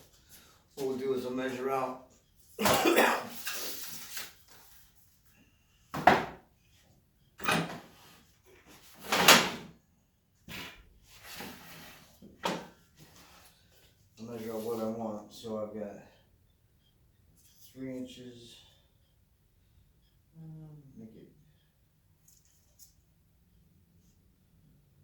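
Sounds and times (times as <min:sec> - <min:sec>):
clatters and scrapes at a workbench: 0:03.3 - 0:05.3, 0:06.0 - 0:09.8, 0:10.4 - 0:14.8.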